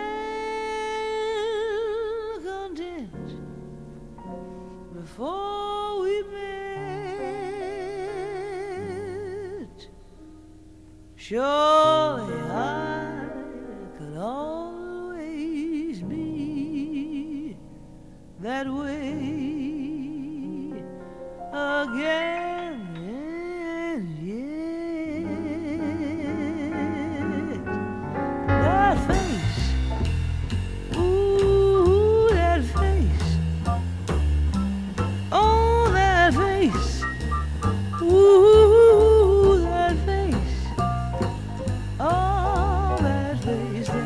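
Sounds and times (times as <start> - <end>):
person singing with vibrato: 0.0 - 3.5, 4.9 - 10.2, 11.2 - 17.8, 18.4 - 30.1, 30.9 - 33.6, 35.2 - 44.0
instrumental accompaniment: 20.7 - 24.0, 25.2 - 44.0.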